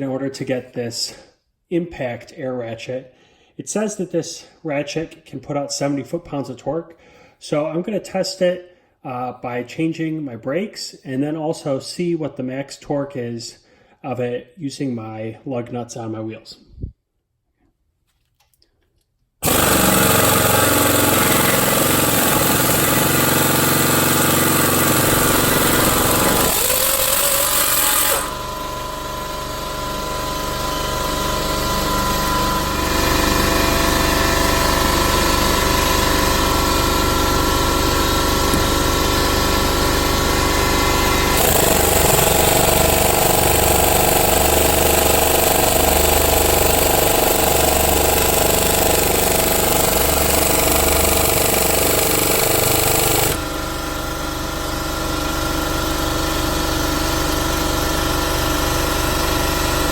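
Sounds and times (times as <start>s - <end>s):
air impact ratchet hammering: 19.4s - 28.5s, 41.2s - 53.8s.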